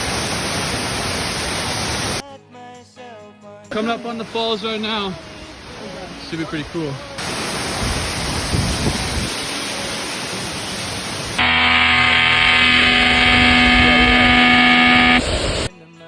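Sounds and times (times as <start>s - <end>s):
waterfall roar: 0.0s - 2.2s, 7.2s - 11.5s
steady tones: 11.4s - 15.7s.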